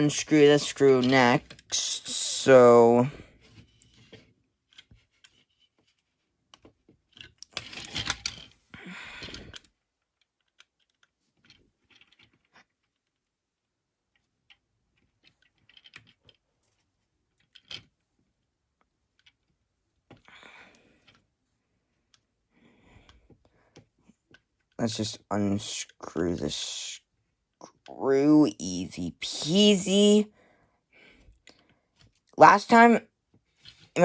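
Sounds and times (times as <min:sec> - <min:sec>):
plastic parts clicking and rattling: 0:00.1 - 0:01.9, 0:03.5 - 0:13.4, 0:14.0 - 0:21.3.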